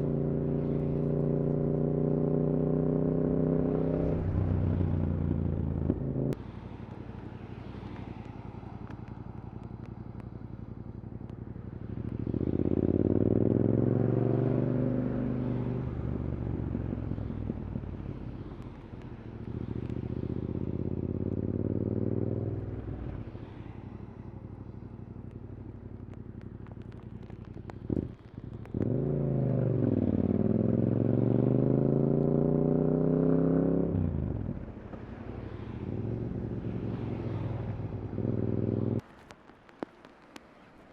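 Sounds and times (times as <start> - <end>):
motorcycle engine revving: 11.8 - 17.5, 19.5 - 22.6, 25.9 - 39.0.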